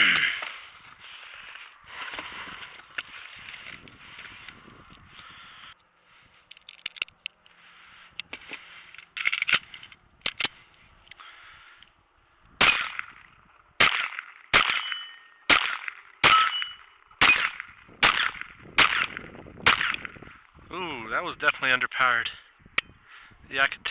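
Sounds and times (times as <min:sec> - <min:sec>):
pistol shots: 0:12.6 - 0:13.2, 0:13.8 - 0:20.1.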